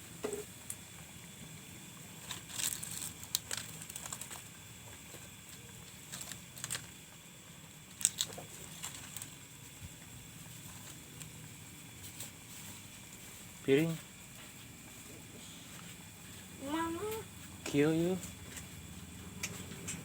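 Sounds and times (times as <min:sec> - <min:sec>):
food being handled by hand: 0:01.9 - 0:16.1.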